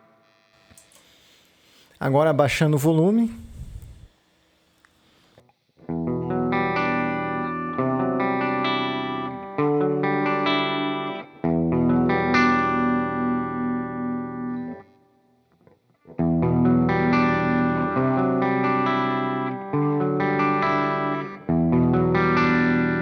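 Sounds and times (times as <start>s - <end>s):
clean electric guitar strumming chords: 5.9s - 14.8s, 16.2s - 23.0s.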